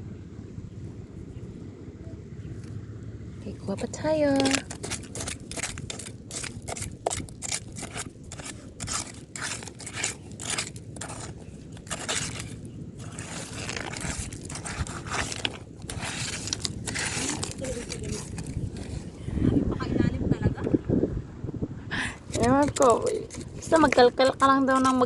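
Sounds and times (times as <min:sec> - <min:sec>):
digging through sand: 0:04.2 - 0:19.2, 0:22.2 - 0:25.0.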